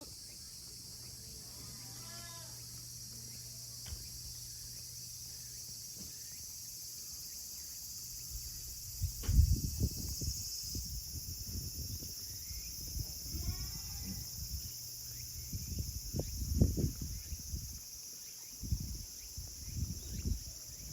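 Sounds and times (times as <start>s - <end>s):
insects chorus: 0.0s - 20.9s
low thumps and rumbles: 8.9s - 10.4s.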